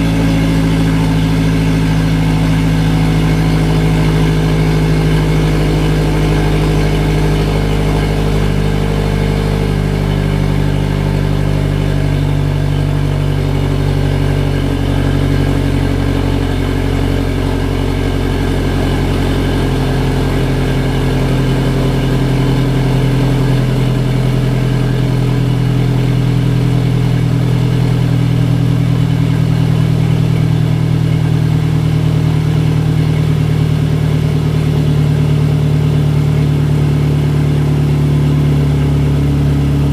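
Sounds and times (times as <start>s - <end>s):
turbocharged engine idling: 0.0s - 39.9s.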